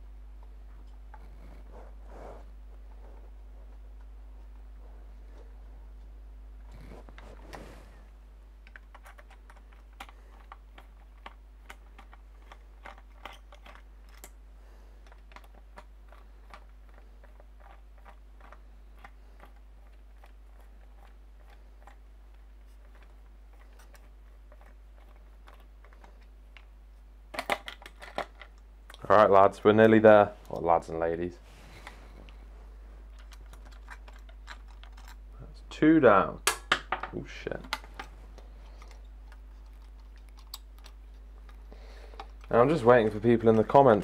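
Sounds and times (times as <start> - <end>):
computer parts and screws clicking: 8.6 - 14.4, 33.2 - 35.2, 37.5 - 42.6.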